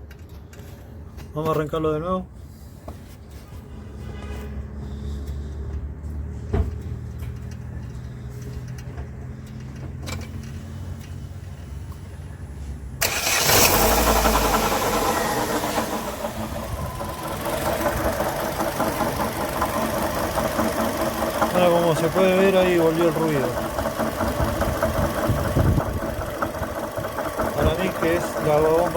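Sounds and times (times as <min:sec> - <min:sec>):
strange engine noise: 0:03.5 - 0:28.9
car engine starting and idling: 0:12.8 - 0:28.9.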